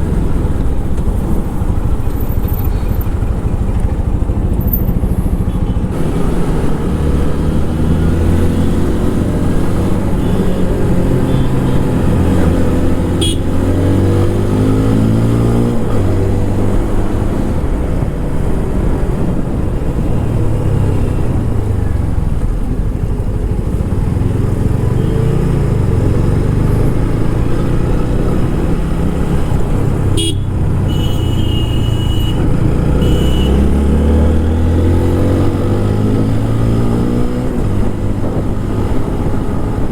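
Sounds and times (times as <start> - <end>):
motorcycle engine accelerating: 0.0 - 39.9
vehicle horn honking: 13.1 - 13.6, 30.2 - 33.7.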